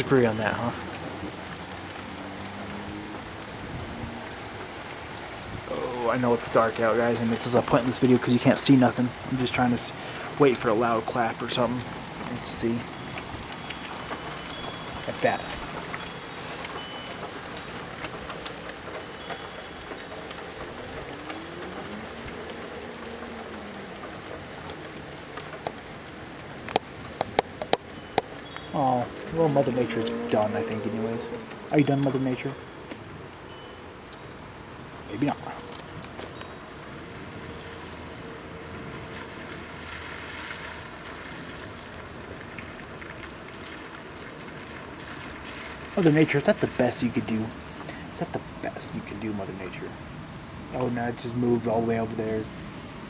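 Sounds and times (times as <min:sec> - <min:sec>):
steady rain falling: 0:00.0 - 0:53.0
sharp ticks: 0:26.7 - 0:28.7.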